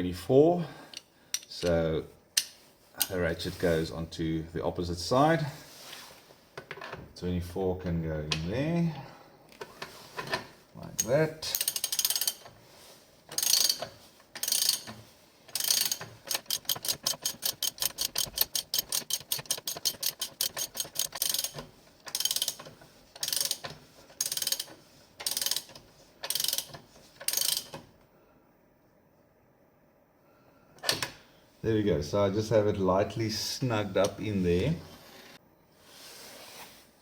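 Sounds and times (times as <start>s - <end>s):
ratchet wrench clicking: 11.0s - 12.5s, 13.3s - 14.9s, 15.5s - 23.6s, 24.2s - 27.8s.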